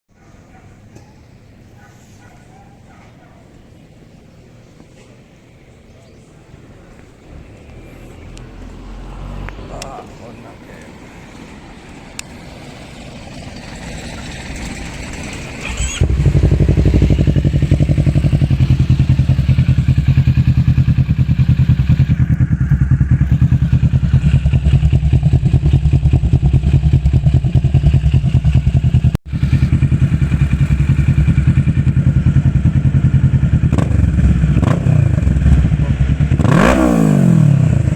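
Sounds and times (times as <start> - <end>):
motorcycle engine idling: 13.3 - 36.5.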